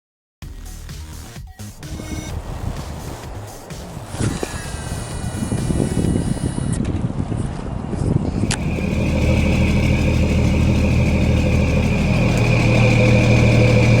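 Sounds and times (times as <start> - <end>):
engine running with high whine: 1.7 - 6.9, 8.2 - 14.0.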